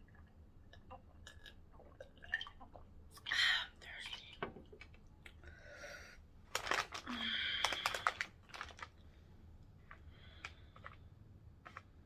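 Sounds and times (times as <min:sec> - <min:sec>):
crinkling wrapper while eating: 0:06.5 - 0:09.1, 0:09.8 - 0:11.0.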